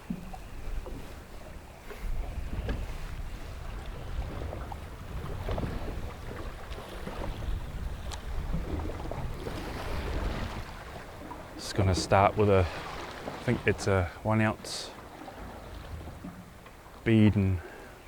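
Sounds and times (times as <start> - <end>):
wind on microphone: 0.0 - 11.4
water lapping against boat hull: 0.0 - 18.0.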